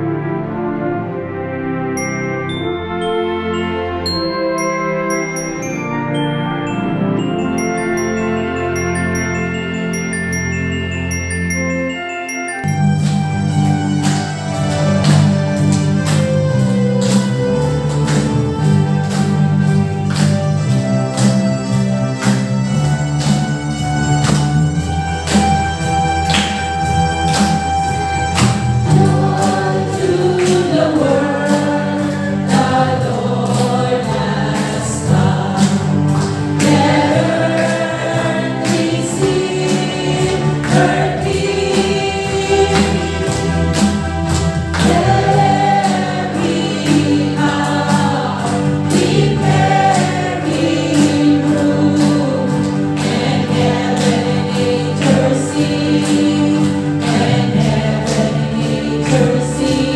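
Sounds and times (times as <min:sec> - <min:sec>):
instrumental accompaniment: 0:00.0 - 0:59.9
choir singing a carol: 0:28.8 - 0:59.9.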